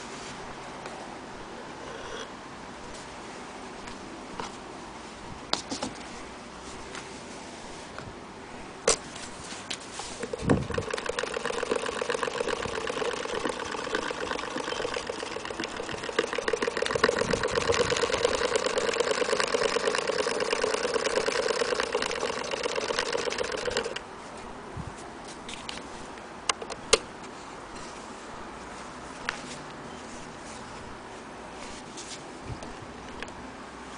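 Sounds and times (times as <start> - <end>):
sewing machine running: 10.2 - 24.0.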